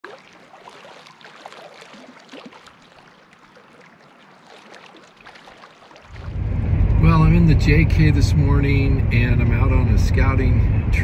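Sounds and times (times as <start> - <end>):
water trickling and splashing: 0.0 - 6.8.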